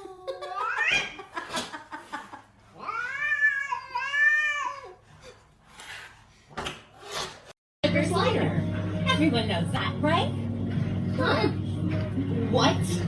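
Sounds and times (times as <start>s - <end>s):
cat meowing: 2.8s - 5.0s.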